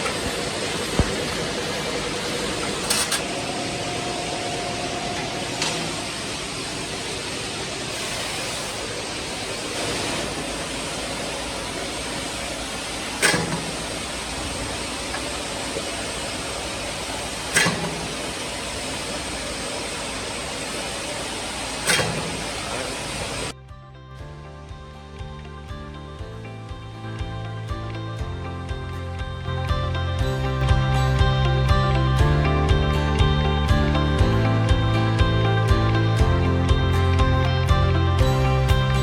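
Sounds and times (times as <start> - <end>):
roll forming machine running: 0.0 - 23.6.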